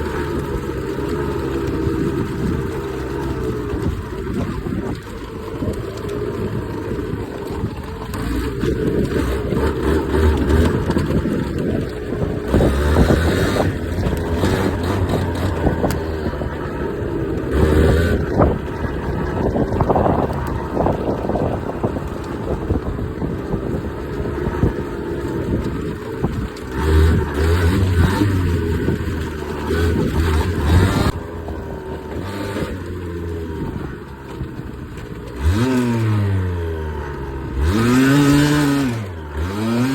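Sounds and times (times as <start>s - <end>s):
two-stroke motorcycle engine revving: 0.0s - 39.9s.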